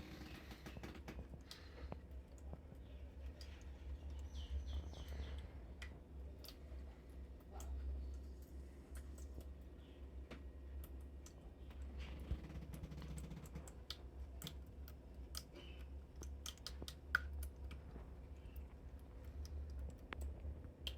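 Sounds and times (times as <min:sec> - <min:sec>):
pet water fountain hum: 0:00.0 - 0:20.9
light clicks and ticks: 0:05.0 - 0:06.6, 0:10.3 - 0:20.9.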